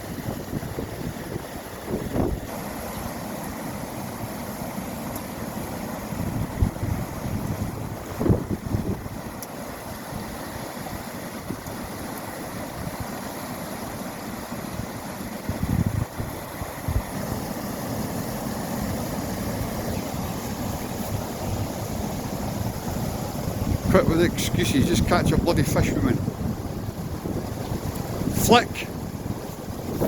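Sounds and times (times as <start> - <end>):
wind buffeting microphone: 0.1 - 2.5, 6.2 - 9.4, 15.4 - 17.3, 18.8 - 30.0
steady outdoor rush: 14.8 - 30.0.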